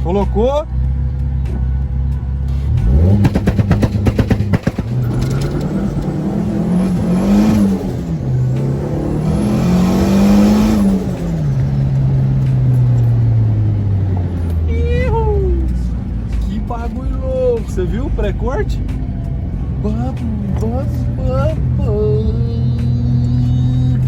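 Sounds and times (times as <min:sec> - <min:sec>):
car engine revving: 0:00.0 - 0:24.0
rev limiter cracks: 0:02.8 - 0:14.7.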